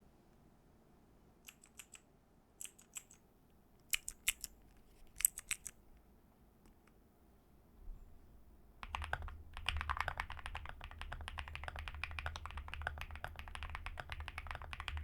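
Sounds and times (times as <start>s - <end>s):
mechanical keyboard keystrokes: 1.5s - 2.0s, 2.6s - 3.2s, 3.9s - 4.6s, 5.2s - 5.8s, 8.8s - 15.0s.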